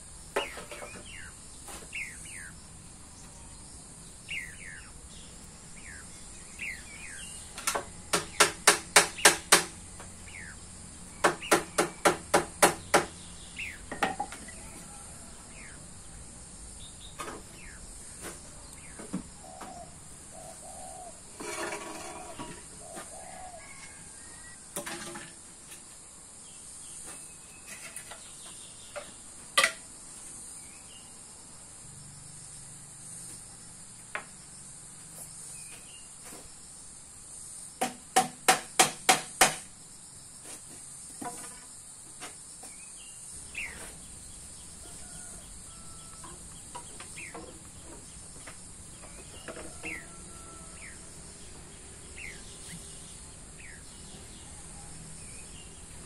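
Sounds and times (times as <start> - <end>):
sharp knocks: 7.6 - 10.1, 11.2 - 13.2, 37.8 - 39.7.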